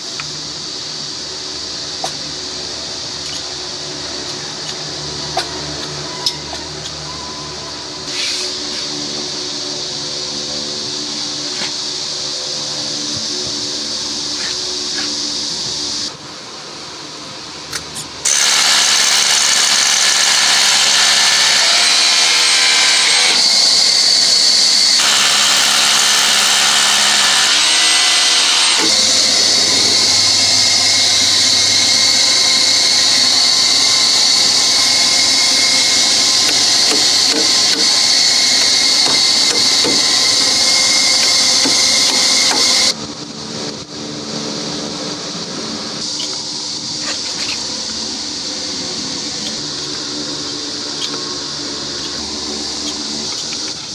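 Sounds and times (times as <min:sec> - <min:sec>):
electric power tool whining: 0:18.2 - 0:43.0.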